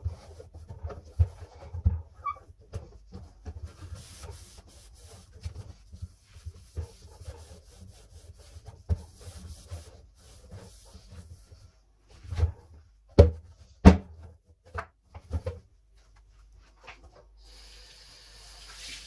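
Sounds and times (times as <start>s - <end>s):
rubbing and wiping on surfaces: 0.0s - 12.7s.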